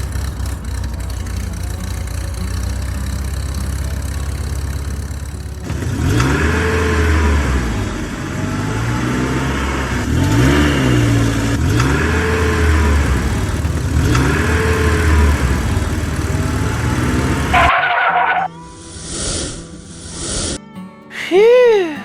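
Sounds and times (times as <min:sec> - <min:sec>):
engine revving: 0:00.0 - 0:20.6.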